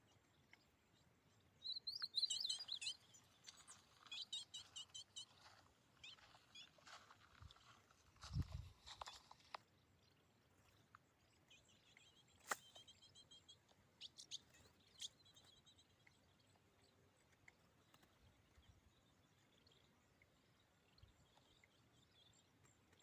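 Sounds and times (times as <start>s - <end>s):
faint short bird chirps: 1.6s - 5.3s.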